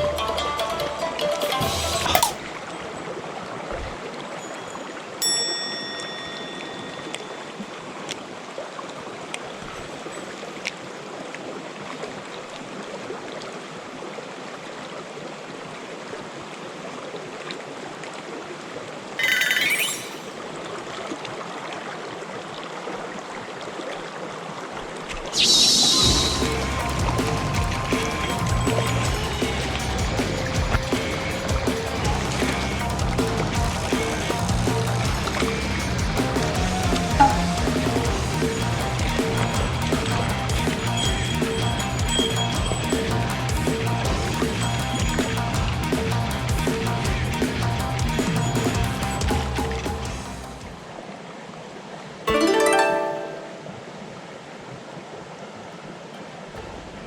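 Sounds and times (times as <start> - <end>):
mountain stream flowing: 0.0 - 44.2, 50.0 - 57.0
short ringing ping: 5.2 - 7.4, 37.2 - 37.5
brief rising sweep: 25.4 - 26.7.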